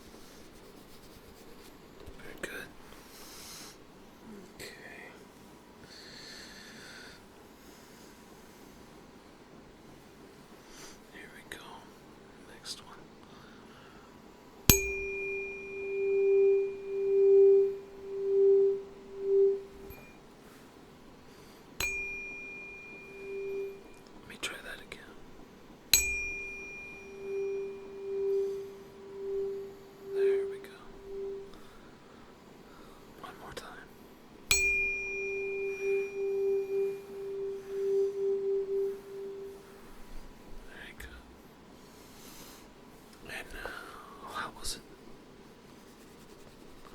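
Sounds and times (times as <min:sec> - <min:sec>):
sharp tap on tuning fork: 0:14.7 - 0:20.2, 0:21.8 - 0:24.0, 0:26.0 - 0:31.5, 0:34.5 - 0:39.6
tuning fork ringing: 0:14.7 - 0:20.2, 0:21.8 - 0:24.1, 0:26.0 - 0:31.7, 0:34.5 - 0:39.8.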